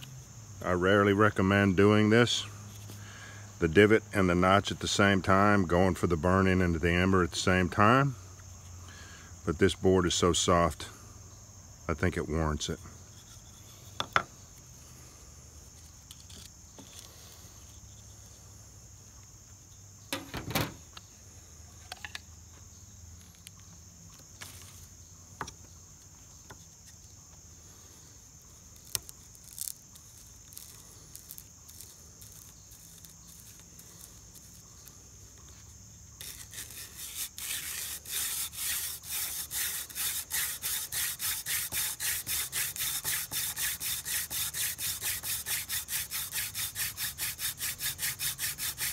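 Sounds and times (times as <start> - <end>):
crickets chirring: 0.0 - 48.9
wood-on-wood rubbing: 35.6 - 48.9.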